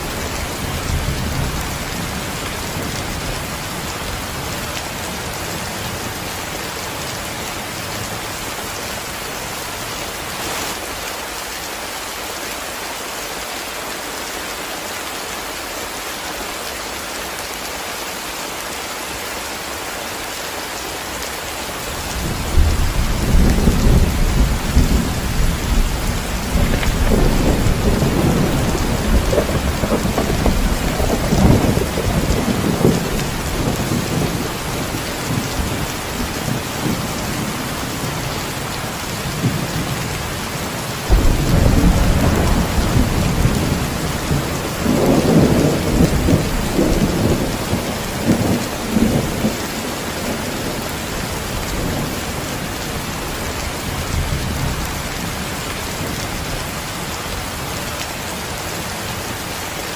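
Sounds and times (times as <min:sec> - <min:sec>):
heavy rain: 0:00.0 - 0:59.9
rolling thunder: 0:22.1 - 0:38.1, 0:41.1 - 0:50.8
thunder crack: 0:22.6 - 0:34.4, 0:41.1 - 0:49.3.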